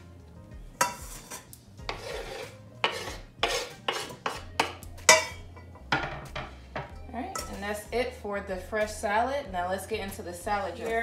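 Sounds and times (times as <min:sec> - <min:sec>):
knife cutting on cutting board: 0:01.0 - 0:04.5.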